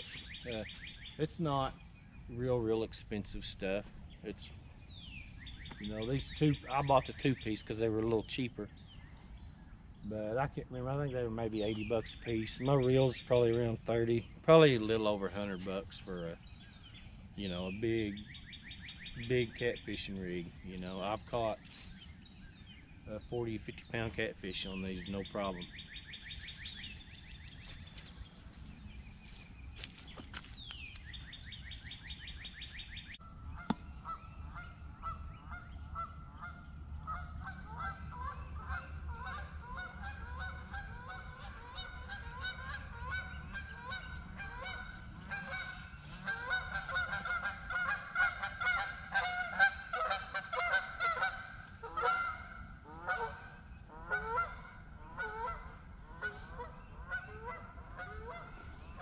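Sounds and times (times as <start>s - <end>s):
small songbird chirping: 0.0s - 47.8s
flock of geese honking: 33.5s - 59.0s.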